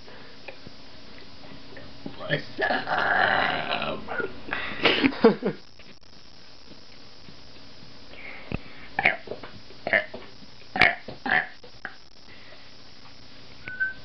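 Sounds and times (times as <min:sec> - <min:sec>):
person burping: 0:02.3 - 0:04.4, 0:09.0 - 0:10.1, 0:10.7 - 0:12.0.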